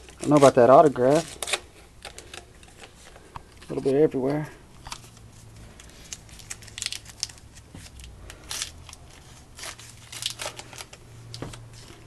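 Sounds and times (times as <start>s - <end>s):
cards and wrappers rustling: 0.0s - 12.0s.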